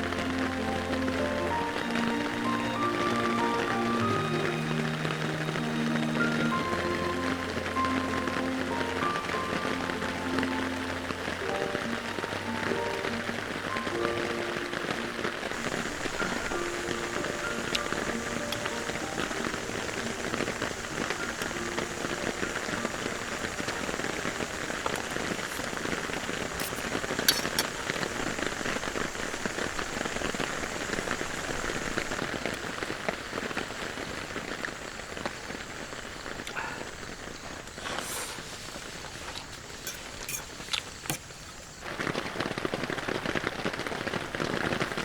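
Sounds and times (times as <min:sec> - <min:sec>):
steady rain falling: 0:00.0 - 0:45.0
sharp drip-like clicks: 0:15.5 - 0:28.8.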